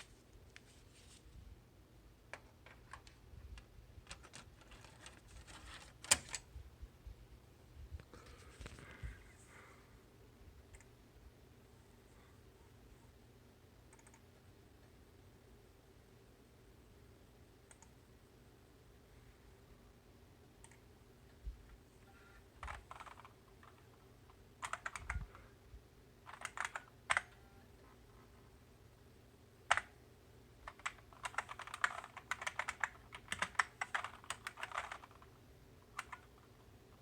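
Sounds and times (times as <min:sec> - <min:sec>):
keyboard typing: 0:04.0 - 0:06.4, 0:13.9 - 0:14.2, 0:22.1 - 0:23.9, 0:24.6 - 0:25.5, 0:26.2 - 0:27.4, 0:29.7 - 0:29.9, 0:30.6 - 0:35.3, 0:35.9 - 0:37.0.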